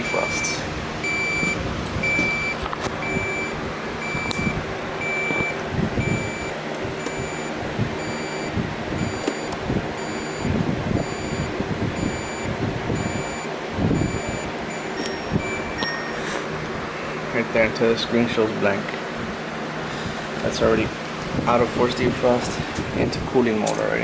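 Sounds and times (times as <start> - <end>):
refrigerator control panel beeping: 0.0 - 16.4.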